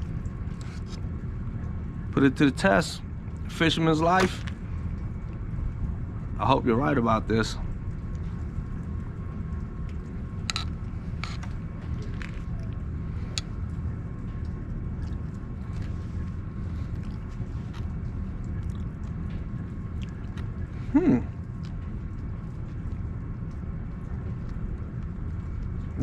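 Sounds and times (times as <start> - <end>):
low background rumble: 0.0 - 26.0
person biting and chewing food: 15.0 - 19.3.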